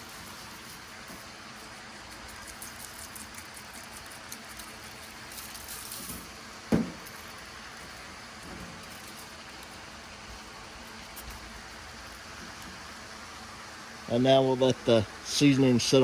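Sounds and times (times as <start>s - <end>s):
small ticks: 0.0s - 6.4s, 7.0s - 13.0s
short rustle: 0.0s - 13.6s
steady background hiss: 0.0s - 16.0s
object set down with a thump: 6.0s - 7.4s.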